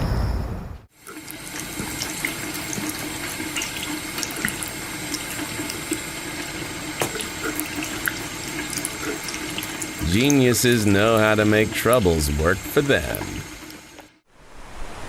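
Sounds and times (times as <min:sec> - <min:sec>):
water running: 0:00.9 - 0:14.2
small splashes and drips: 0:01.0 - 0:12.0.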